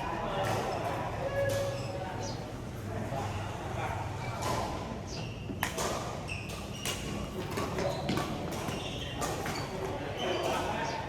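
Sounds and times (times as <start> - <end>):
shoe squeaks: 6.2 - 7.0, 7.8 - 11.0.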